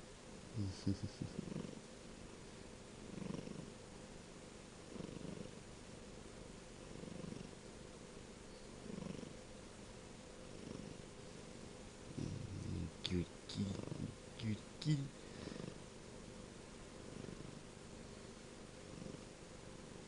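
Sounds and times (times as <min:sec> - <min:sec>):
kitten purring: 0:00.6 - 0:01.9, 0:03.1 - 0:03.8, 0:04.8 - 0:05.6, 0:06.8 - 0:07.6, 0:08.8 - 0:09.4, 0:10.5 - 0:11.1, 0:12.0 - 0:15.9, 0:17.0 - 0:17.7, 0:18.8 - 0:19.4.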